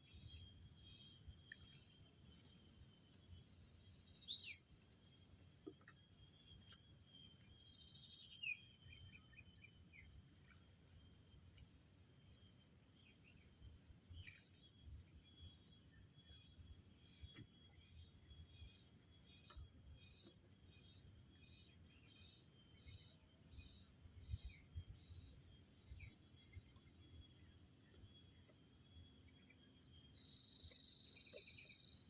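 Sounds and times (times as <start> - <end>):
bird chirps: 30.1 - 32.0.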